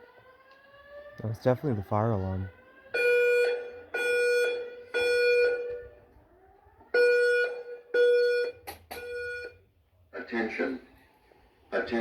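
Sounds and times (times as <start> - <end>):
fire alarm beeps: 1.2 - 6.2, 6.9 - 9.7.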